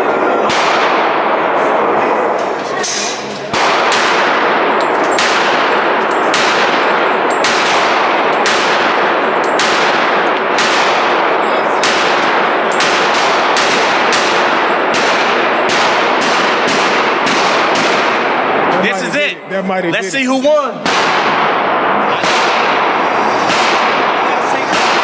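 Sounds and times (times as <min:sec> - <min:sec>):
constant background noise: 0:00.0 - 0:25.0
handgun shots echoing: 0:02.8 - 0:18.5, 0:24.7 - 0:25.0.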